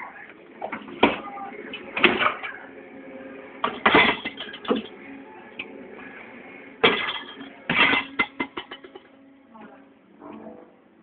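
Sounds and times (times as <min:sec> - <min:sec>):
dishwasher clunks and rattles: 0:03.6 - 0:04.9, 0:06.8 - 0:09.1.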